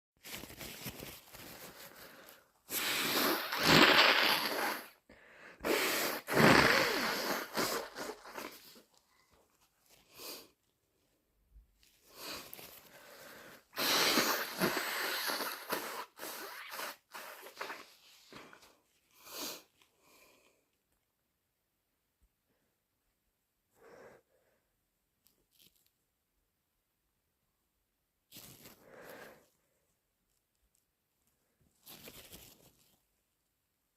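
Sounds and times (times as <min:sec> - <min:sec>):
breathing: 0:01.3 - 0:02.6, 0:05.1 - 0:05.6, 0:12.0 - 0:13.8, 0:23.7 - 0:24.8, 0:28.7 - 0:29.9
person blowing nose: 0:01.3 - 0:08.9, 0:12.1 - 0:20.2
person sneezing: 0:05.6 - 0:08.8, 0:13.7 - 0:18.4.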